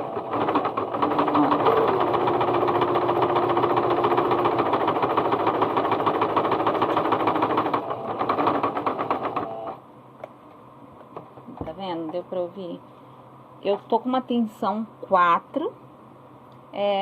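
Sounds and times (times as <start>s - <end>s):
sewing machine knocking clatter: 0.0s - 9.8s.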